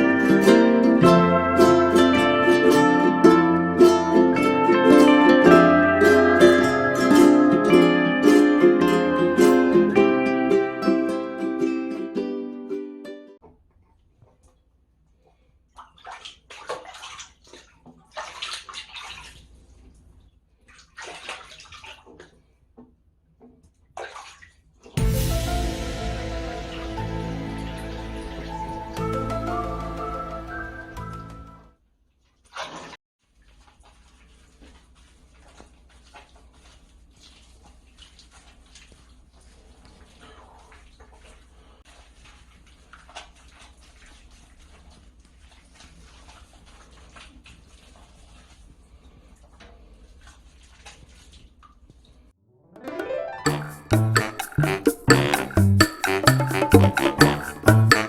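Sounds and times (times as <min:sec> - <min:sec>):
water splashing and pouring: 0:15.2 - 0:22.6, 0:23.7 - 0:31.6, 0:32.3 - 0:58.0.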